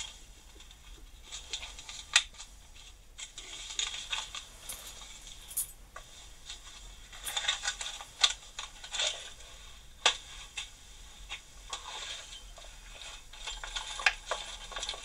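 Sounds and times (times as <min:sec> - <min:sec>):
metal hand tools clinking: 0:04.6 - 0:05.8.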